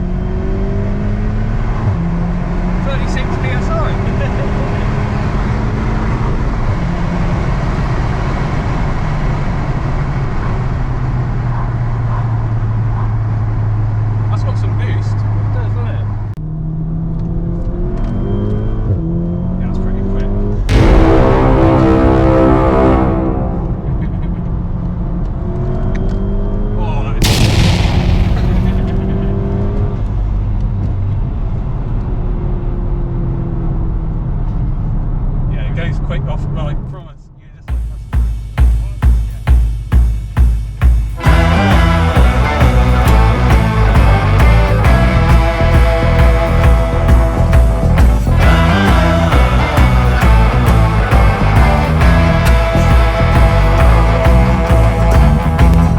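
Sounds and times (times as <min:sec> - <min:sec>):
car engine running while driving: 0:00.0 - 0:20.7
road and wind noise: 0:00.0 - 0:38.2, 0:41.2 - 0:55.9
car engine running: 0:27.2 - 0:55.9.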